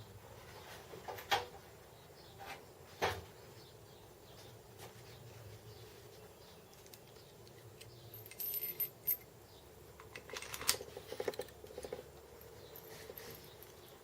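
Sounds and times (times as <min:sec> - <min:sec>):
metal parts clinking and rattling: 0:07.8 - 0:09.3, 0:10.0 - 0:14.0.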